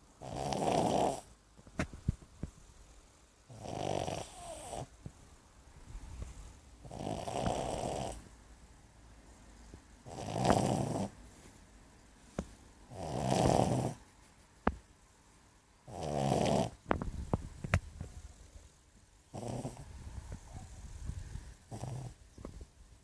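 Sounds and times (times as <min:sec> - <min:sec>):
dog snoring: 0:00.2 - 0:01.3, 0:03.5 - 0:04.9, 0:06.8 - 0:08.3, 0:10.0 - 0:11.2, 0:12.9 - 0:14.0, 0:15.8 - 0:16.8, 0:19.3 - 0:19.9, 0:21.7 - 0:22.2.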